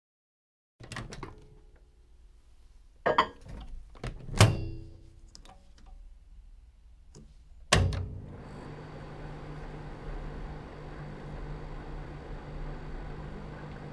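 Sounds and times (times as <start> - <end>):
dish clunk with ringing clink: 3.1 - 3.4, 4.5 - 4.9
microwave door clicks and clatters: 4.0 - 4.9, 7.7 - 8.2
microwave door shutting: 4.3 - 4.9, 7.7 - 8.5
microwave oven humming: 7.7 - 13.9.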